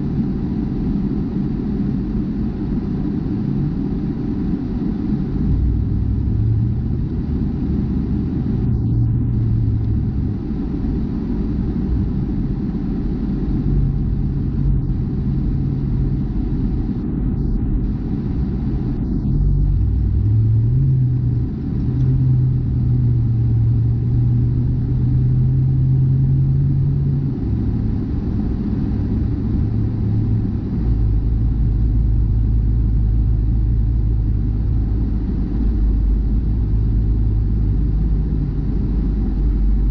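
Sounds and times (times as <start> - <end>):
road noise rumble: 0.0 - 39.9
car engine humming: 0.8 - 39.9.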